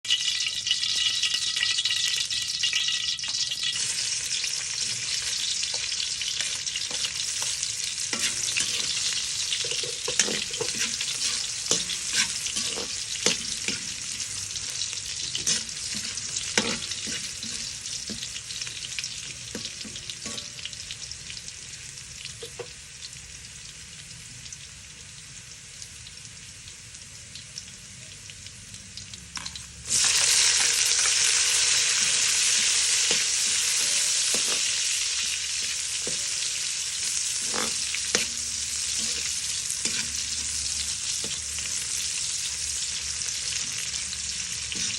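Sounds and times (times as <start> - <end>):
food sizzling in a pan: 0.0 - 44.9
utensil scraping a pan: 3.7 - 18.4, 31.2 - 42.1, 44.6 - 44.9.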